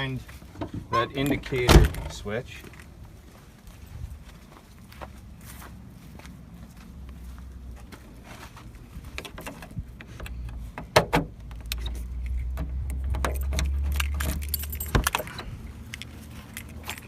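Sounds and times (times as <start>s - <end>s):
clicks and knocks of handling: 9.1s - 17.0s
keys jangling: 13.2s - 17.0s.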